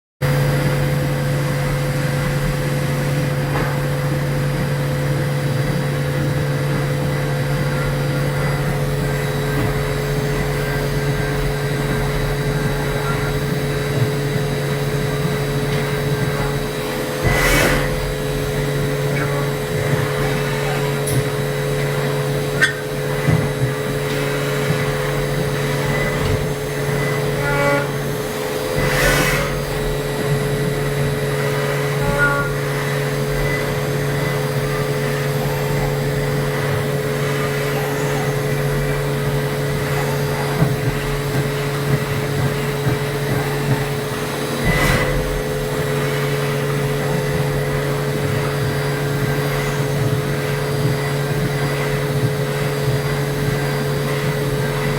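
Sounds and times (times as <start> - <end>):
milling machine humming: 0.2 - 54.9
brief rushes of noise: 28.7 - 29.9.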